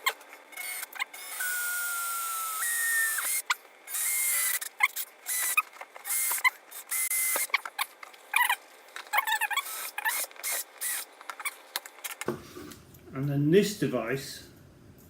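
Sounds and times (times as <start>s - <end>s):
cordless drill whining: 0.0s - 7.6s, 9.1s - 11.1s.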